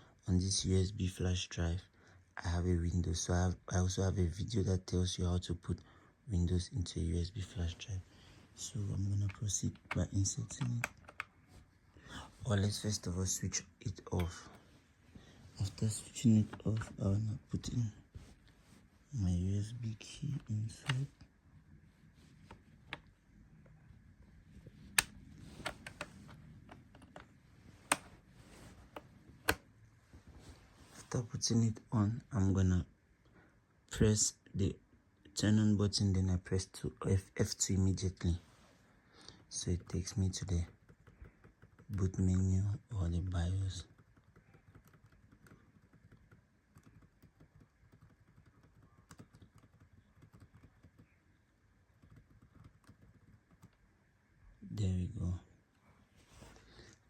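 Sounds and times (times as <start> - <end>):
clicks and knocks handling laptop: 24.6 - 29.7
rapid tapping on keyboard key: 39.8 - 42.3, 43.6 - 51.2, 51.9 - 53.8.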